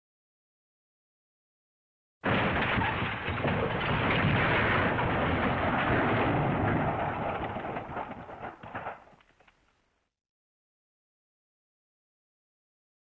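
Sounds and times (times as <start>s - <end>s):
loud crash of smashed debris: 2.2s - 9.2s.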